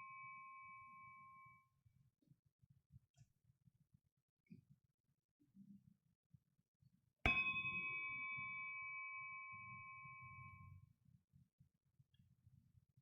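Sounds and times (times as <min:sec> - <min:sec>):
bell ringing with high tone: 0:07.3 - 0:10.7.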